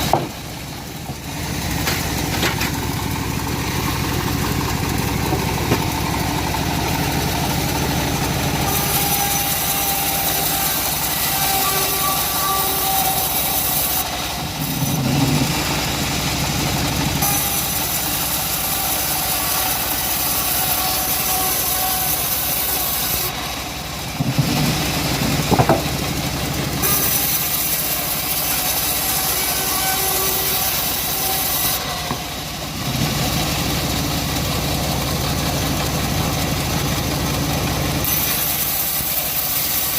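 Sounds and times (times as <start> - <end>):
engine-driven wood saw running: 0.0 - 39.9
saw blade hissing through wood: 8.6 - 15.9, 17.2 - 23.4, 26.8 - 32.1, 38.0 - 39.9.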